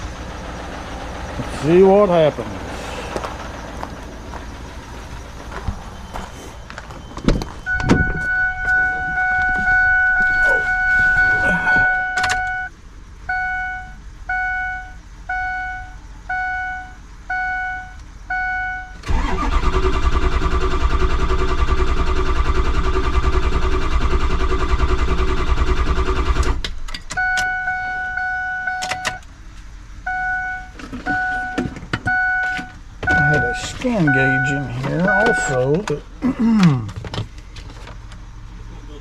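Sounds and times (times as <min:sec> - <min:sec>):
diesel engine cranking on starter: 0:00.0 - 0:08.5, 0:18.9 - 0:27.6
warning chime pulsing: 0:04.7 - 0:12.7, 0:32.2 - 0:35.8.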